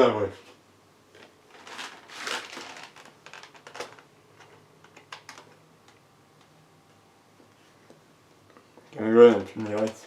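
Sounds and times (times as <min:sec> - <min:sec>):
rustling scrapes: 0:01.5 - 0:04.0.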